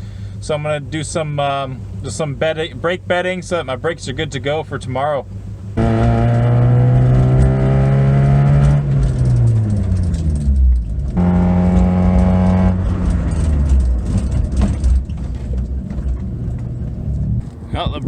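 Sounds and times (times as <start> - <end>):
car engine revving: 5.2 - 17.6.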